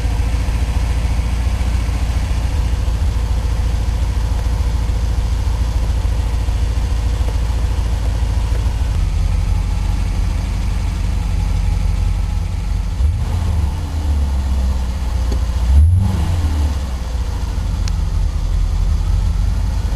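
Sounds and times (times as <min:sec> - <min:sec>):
car engine idling and revving: 0:00.0 - 0:19.9.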